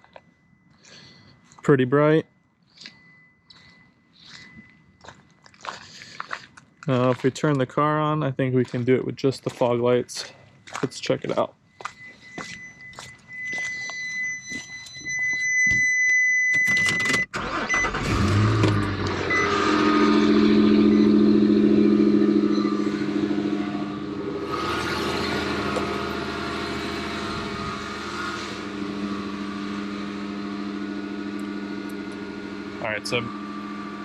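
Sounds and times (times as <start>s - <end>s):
car engine cranking and idling: 0.0s - 34.0s
high electronic tone: 17.6s - 34.0s.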